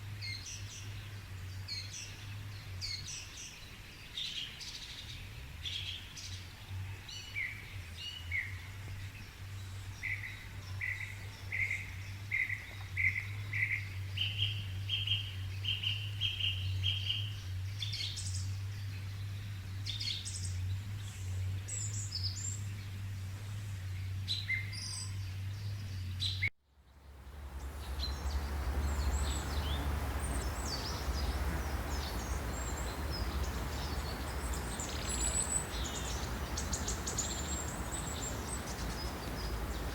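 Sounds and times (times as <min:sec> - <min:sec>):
forest birds singing: 0:00.0 - 0:39.9
hissing background: 0:27.0 - 0:39.9
steady low hum: 0:27.0 - 0:39.9
high bird chirps: 0:27.5 - 0:39.9.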